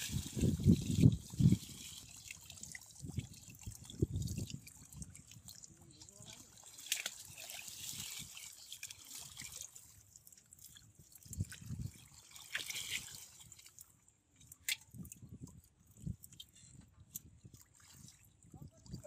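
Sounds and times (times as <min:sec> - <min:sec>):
water trickling and sloshing: 0:00.0 - 0:19.0.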